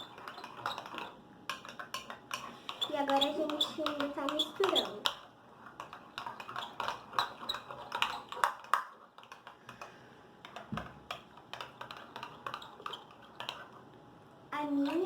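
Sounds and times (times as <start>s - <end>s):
utensil scraping a container: 1.9s - 5.2s, 5.8s - 8.8s.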